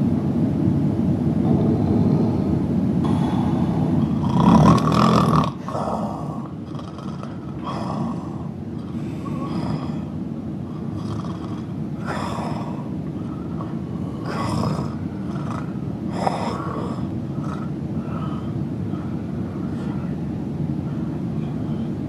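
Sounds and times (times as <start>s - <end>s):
steady low rumble: 0.0s - 22.0s
man snoring softly: 3.0s - 10.1s, 10.7s - 20.2s.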